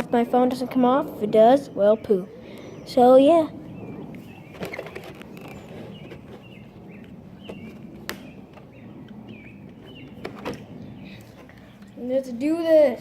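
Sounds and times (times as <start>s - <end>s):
handling clicks and knocks: 4.5s - 8.7s.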